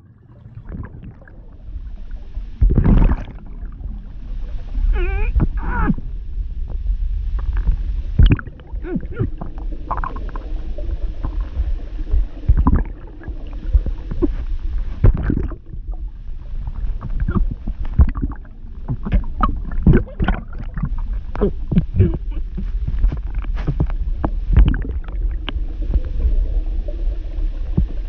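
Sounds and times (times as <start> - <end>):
steady low rumble: 0.0 - 28.0
person gurgling and bubbling: 2.6 - 3.4, 4.8 - 6.0, 8.2 - 10.5, 12.4 - 14.4, 15.0 - 15.7, 17.0 - 23.9, 24.6 - 25.3
muffled mmph sounds: 7.3 - 28.0.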